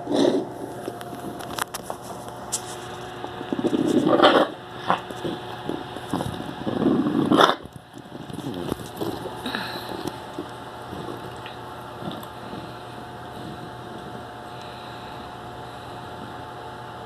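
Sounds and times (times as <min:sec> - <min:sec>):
dog coughing: 0:04.1 - 0:14.2.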